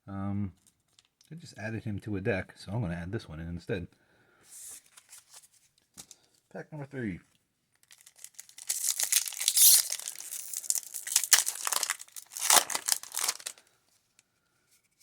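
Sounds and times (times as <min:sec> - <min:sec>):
plastic wrapper tearing and crinkling: 0:07.8 - 0:13.6.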